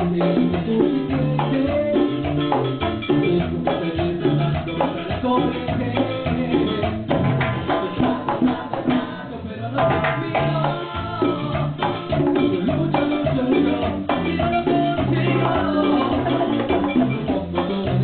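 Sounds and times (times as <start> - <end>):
latin dance band playing: 0.0 - 18.0.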